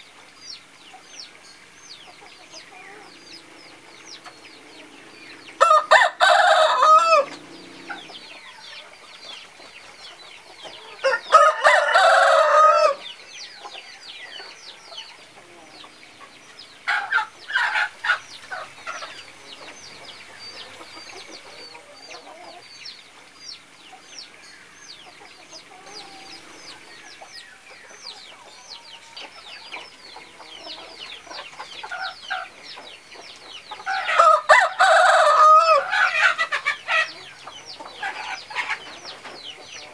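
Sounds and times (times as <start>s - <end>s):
high twittering chirps: 0.0s - 11.4s
roosters crowing: 0.7s - 22.9s, 23.6s - 39.9s.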